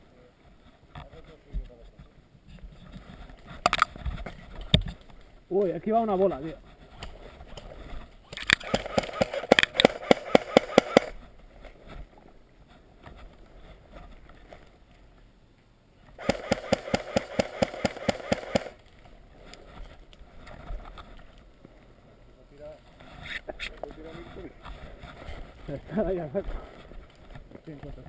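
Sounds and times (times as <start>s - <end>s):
electric gun firing full-auto bursts: 8.5s - 11.2s, 16.2s - 18.8s.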